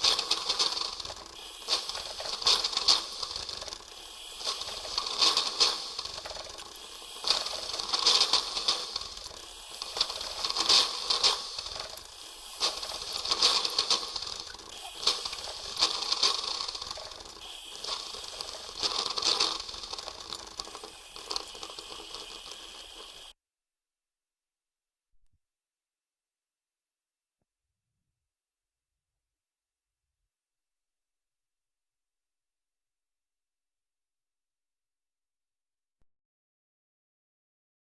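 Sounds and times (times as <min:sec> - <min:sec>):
coffee machine hissing and rattling: 0:00.0 - 0:23.3.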